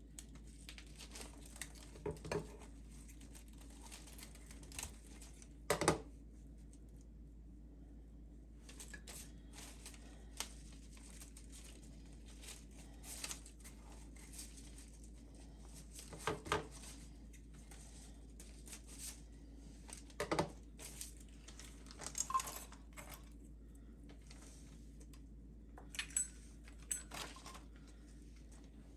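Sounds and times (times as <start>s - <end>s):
steady low hum: 0.0s - 28.9s
light handling clicks and rustling: 25.8s - 28.8s.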